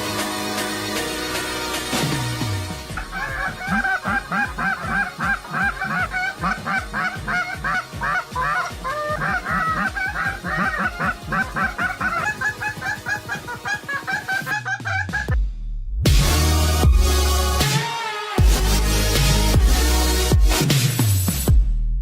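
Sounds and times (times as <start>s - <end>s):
geese honking: 3.0s - 15.4s.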